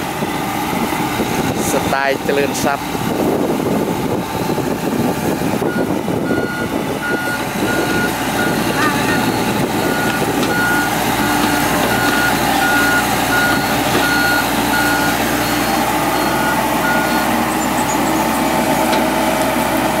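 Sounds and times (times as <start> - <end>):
diesel engine running: 0.0 - 20.0
reversing alarm beeping: 5.6 - 18.6.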